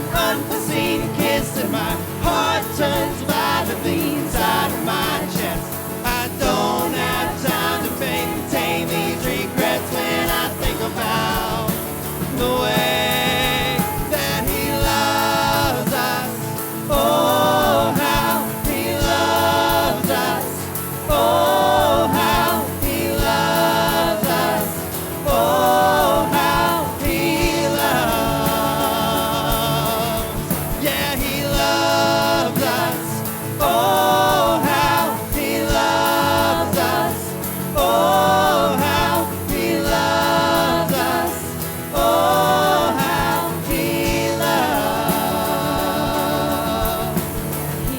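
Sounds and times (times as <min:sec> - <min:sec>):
steady drum beat: 0:00.0 - 0:47.9
voices singing: 0:00.0 - 0:47.9
worship band music: 0:00.0 - 0:47.9.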